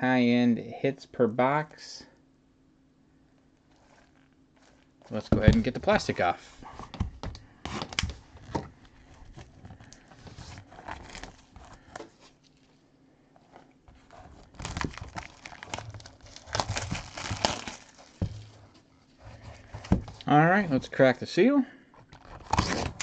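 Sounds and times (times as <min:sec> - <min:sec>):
plastic wrap tearing and crinkling: 0:03.7 - 0:06.9, 0:07.7 - 0:12.8, 0:13.4 - 0:18.7, 0:22.2 - 0:23.0.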